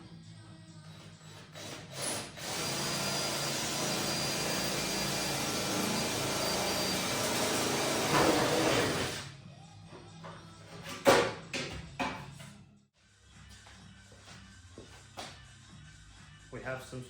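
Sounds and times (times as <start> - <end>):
power tool running: 1.5 - 9.3.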